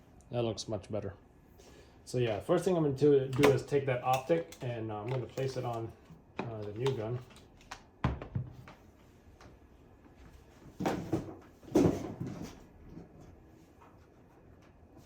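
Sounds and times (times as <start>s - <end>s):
rifle handling knocks and clatter: 3.3s - 8.8s.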